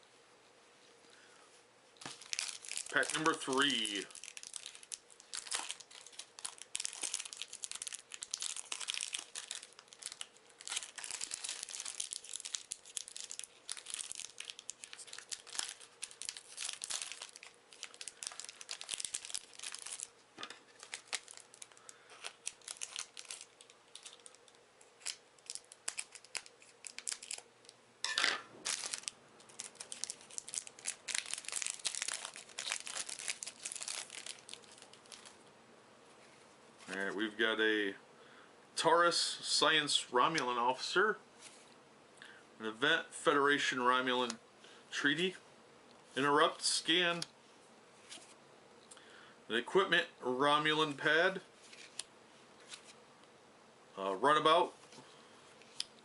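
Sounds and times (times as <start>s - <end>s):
foil pack crinkling and tearing: 2.0s - 27.8s, 28.6s - 35.4s, 51.6s - 53.0s.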